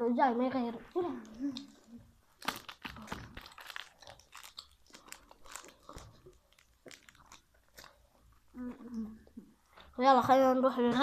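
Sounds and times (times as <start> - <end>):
person chewing crunchy candy: 1.2 - 9.4.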